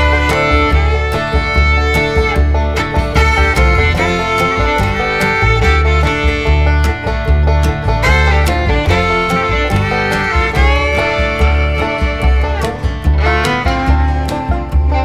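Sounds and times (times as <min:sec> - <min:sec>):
upbeat bluegrass music: 0:00.0 - 0:15.0.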